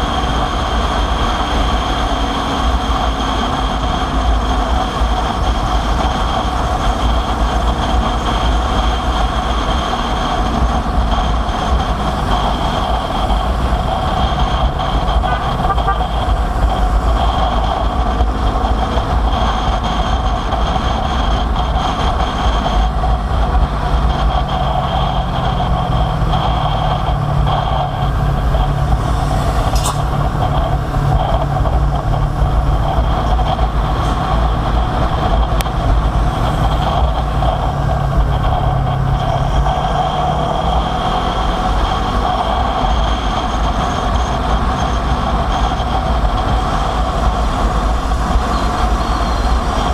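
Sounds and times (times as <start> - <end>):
motorcycle engine running: 0.0 - 49.9
wind rumble on microphone: 0.0 - 49.9
deeper engine note: 9.6 - 20.0.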